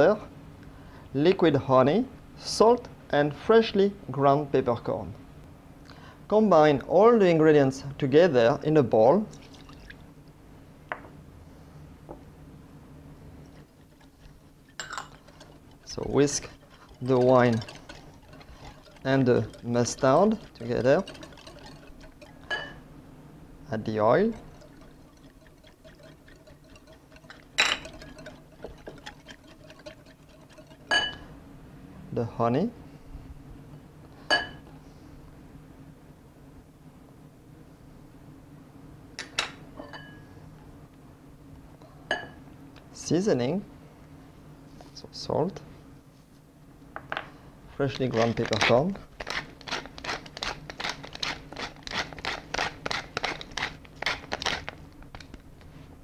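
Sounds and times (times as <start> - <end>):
pepper mill grinding: 13.6 - 22.7, 23.8 - 31.2, 47.9 - 55.4
whisk ticking against bowl: 13.6 - 22.7, 23.8 - 31.2
whisk clinking on bowl: 13.8 - 22.8, 24.1 - 31.3.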